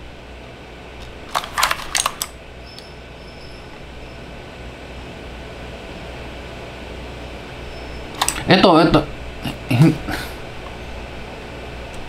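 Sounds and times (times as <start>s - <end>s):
low steady hum: 0.0s - 12.0s
keyboard keys clicking: 8.2s - 8.5s.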